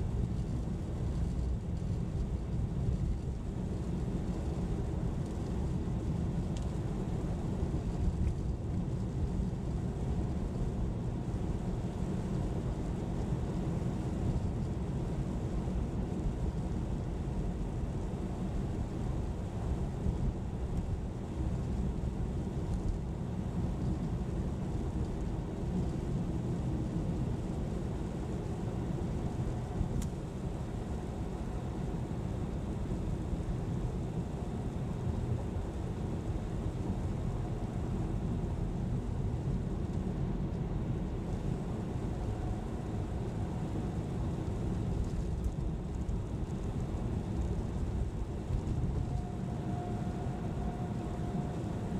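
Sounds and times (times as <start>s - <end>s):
car engine and tyre rumble: 0.0s - 51.9s
faint engine tones: 24.7s - 51.9s.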